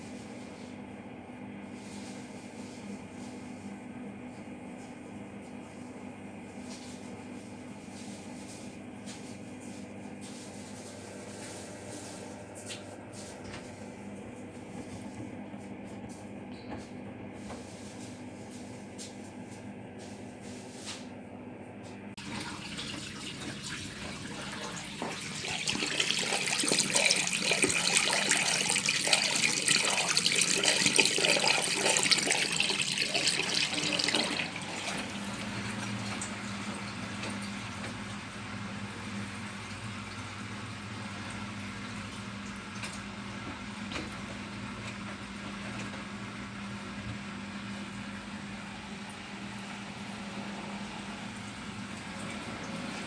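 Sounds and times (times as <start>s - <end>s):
washing machine taking in water: 22.2s - 53.0s.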